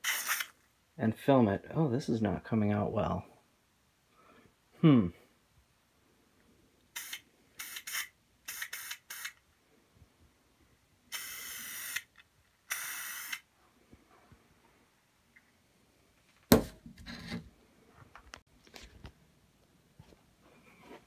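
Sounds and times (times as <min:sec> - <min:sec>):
sharp knock: 0:16.5 - 0:16.8.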